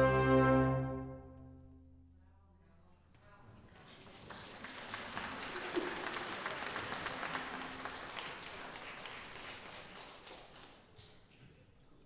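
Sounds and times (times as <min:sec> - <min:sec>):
audience applauding: 0:03.6 - 0:11.4.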